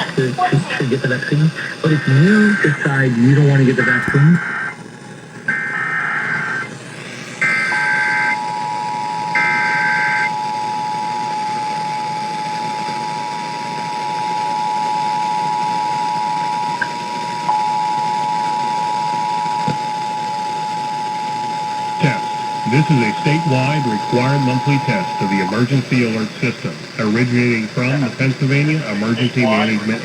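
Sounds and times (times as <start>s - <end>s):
warbling data bursts: 0.0s - 28.3s
two-tone attention signal: 7.6s - 25.9s.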